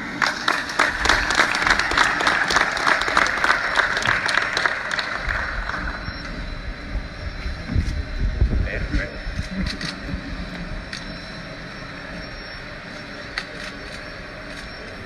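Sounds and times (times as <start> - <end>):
audience applauding: 0.0 - 6.4
low rumble: 5.0 - 12.2.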